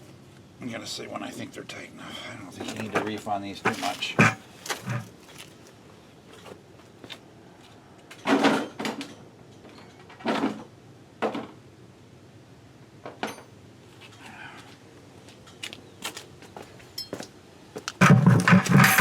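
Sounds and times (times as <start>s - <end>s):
wrench clanking on metal: 3.7s - 5.1s, 18.0s - 19.0s.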